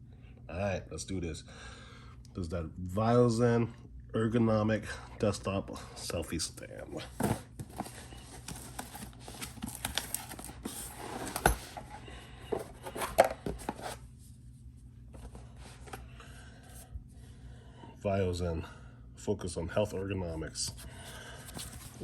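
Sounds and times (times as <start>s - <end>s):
cardboard tearing and rustling: 7.1s - 14.0s.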